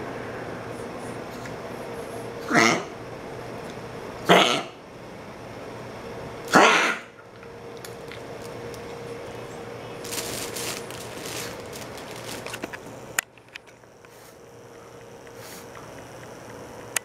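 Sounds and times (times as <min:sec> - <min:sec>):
dog coughing: 0:02.4 - 0:03.0, 0:04.2 - 0:04.8, 0:06.5 - 0:07.2.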